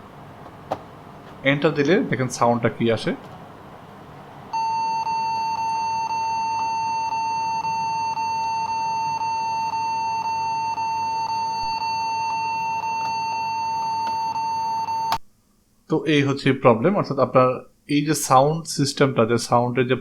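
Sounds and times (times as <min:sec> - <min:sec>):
continuous high-pitched beep: 0:04.5 - 0:15.2.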